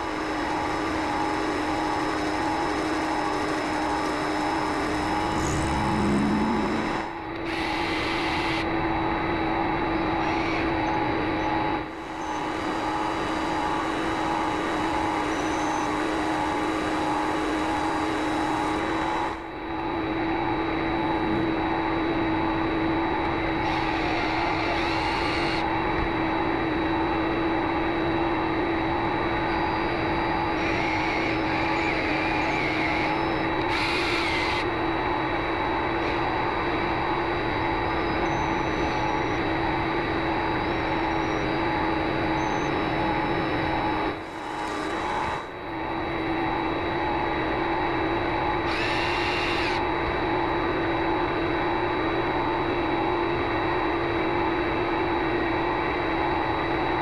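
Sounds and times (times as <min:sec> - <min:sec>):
mini lathe motor whine: 0:00.0 - 0:08.7, 0:10.2 - 0:25.7, 0:27.1 - 0:34.8, 0:35.9 - 0:47.2, 0:48.5 - 0:49.9.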